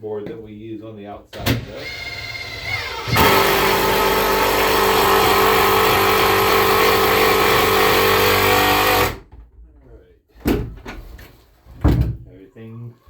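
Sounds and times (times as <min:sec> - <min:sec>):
power drill driving screw into wood: 0:01.5 - 0:09.2.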